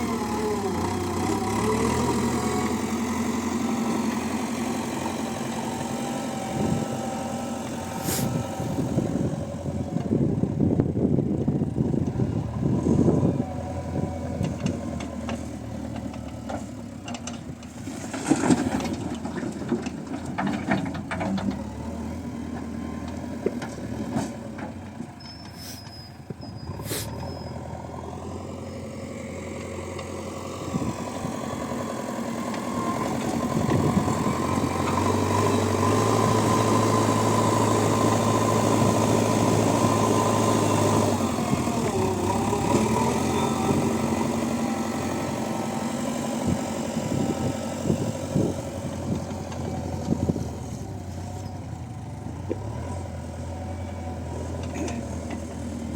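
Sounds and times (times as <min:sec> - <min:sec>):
heavy diesel engine running: 0:00.0 - 0:55.9
clanks and knocks: 0:16.0 - 0:21.6.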